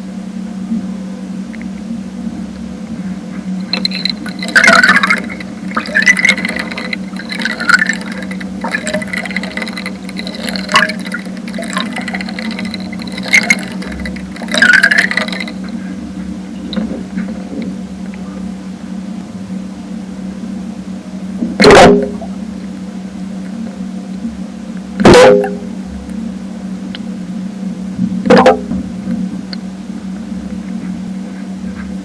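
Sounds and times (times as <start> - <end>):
steady low hum: 0.0 - 32.0
underwater sloshing and bubbling: 0.4 - 32.0.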